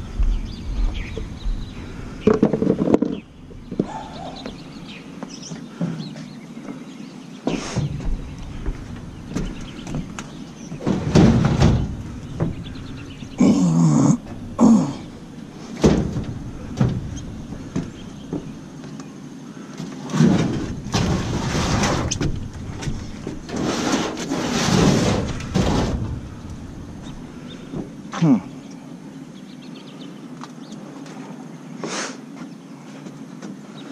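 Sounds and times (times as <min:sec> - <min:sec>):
thumps and clanks of metal: 0:02.2 - 0:04.1, 0:07.5 - 0:13.6, 0:14.2 - 0:18.7, 0:20.0 - 0:28.0
metal scraping: 0:20.1 - 0:27.7.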